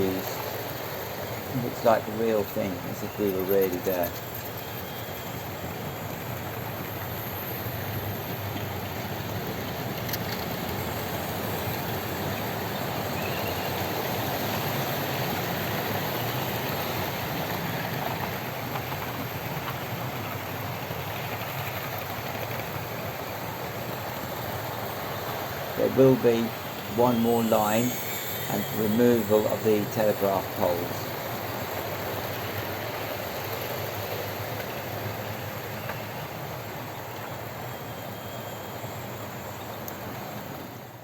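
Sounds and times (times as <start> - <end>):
model train running on track: 0.0 - 41.0.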